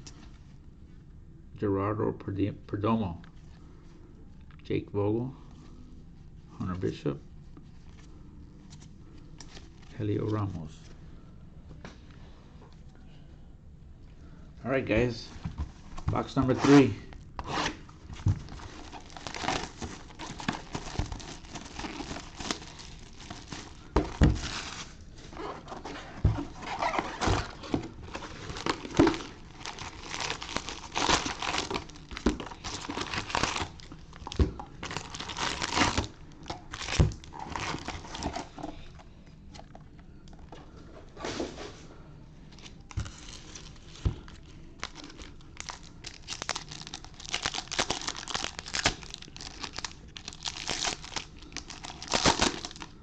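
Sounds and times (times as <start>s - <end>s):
plastic wrapping crinkling and tearing: 15.8s - 38.8s, 42.5s - 53.0s.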